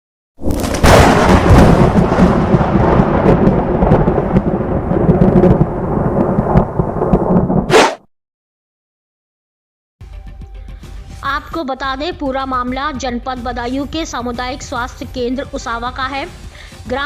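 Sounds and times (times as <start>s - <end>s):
crackles: 0.4s - 7.7s
thunder-like rumbling: 0.4s - 7.7s.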